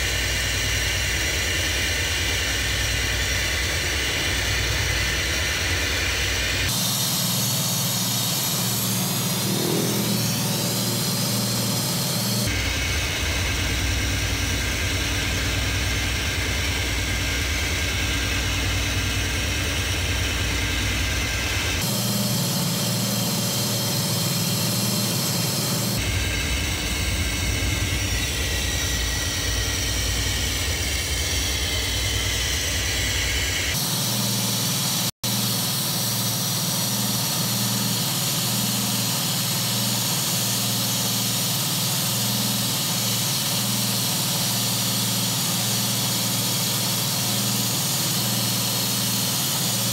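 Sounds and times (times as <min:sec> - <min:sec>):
car engine idling: 0:00.0 - 0:49.9.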